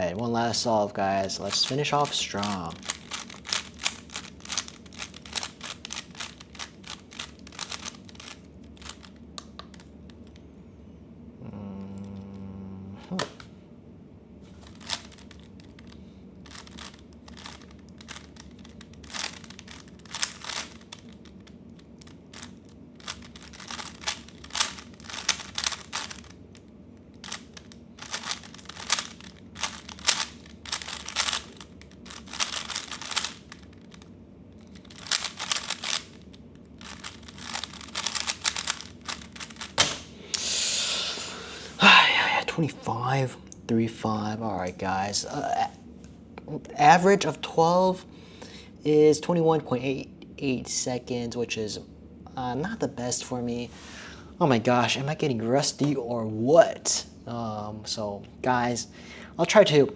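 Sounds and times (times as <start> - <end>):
puzzle cube clicking: 1.4 - 10.4, 14.6 - 26.4, 27.2 - 40.1.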